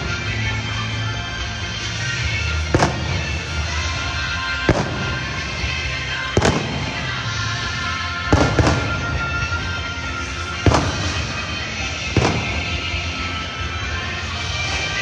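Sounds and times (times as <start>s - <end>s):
music playing: 0.0s - 15.0s
fireworks bangs: 2.6s - 9.8s, 10.5s - 13.3s.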